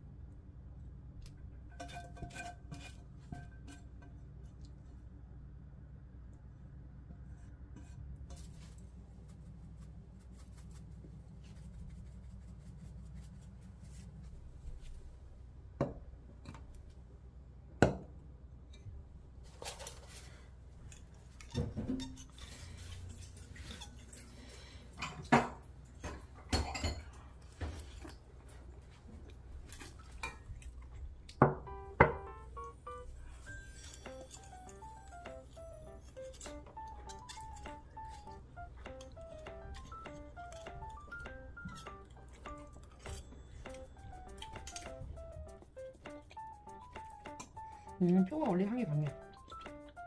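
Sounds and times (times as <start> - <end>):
dishes and cutlery clinking: 1.6 - 4.4, 20.9 - 28.1, 31.4 - 45.4
low hum: 27.0 - 46.4.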